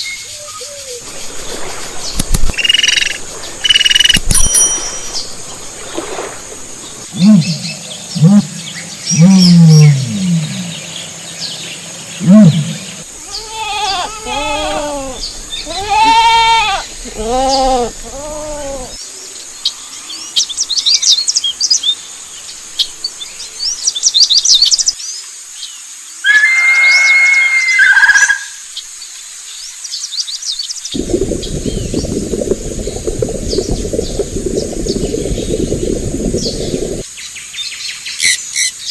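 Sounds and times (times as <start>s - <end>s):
small birds chirping: 0.0s - 25.0s, 30.9s - 37.4s
steady hiss: 1.0s - 7.1s, 12.9s - 26.2s, 30.9s - 37.1s
held animal call: 12.2s - 19.0s
low animal calls: 12.2s - 19.0s
bleating: 13.2s - 19.0s.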